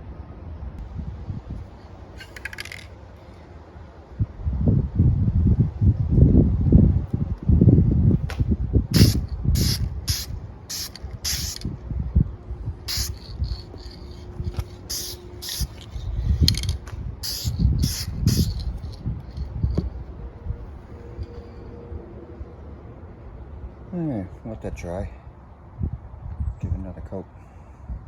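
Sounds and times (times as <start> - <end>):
wind on microphone: 0.8 - 2.9, 4.1 - 22.1, 25.7 - 26.8
aerosol spray hissing: 9.0 - 11.7, 12.9 - 19.5.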